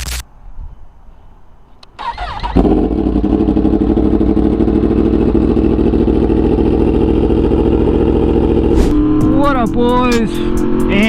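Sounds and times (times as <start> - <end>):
motorcycle engine running loudly: 2.5 - 11.0
brief gliding sound: 8.7 - 9.2.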